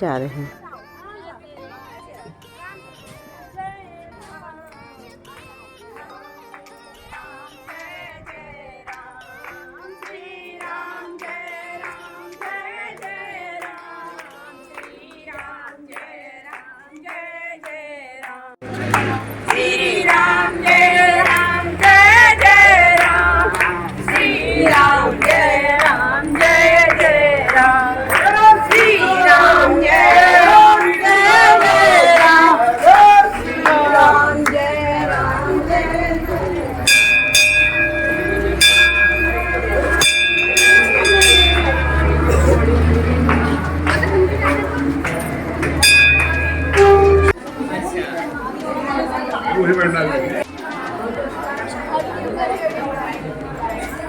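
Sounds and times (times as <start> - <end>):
soft devotional singing: 0.0 - 47.4
loud group singing: 5.2 - 47.4
rhythmic hand-clapping: 5.3 - 47.5.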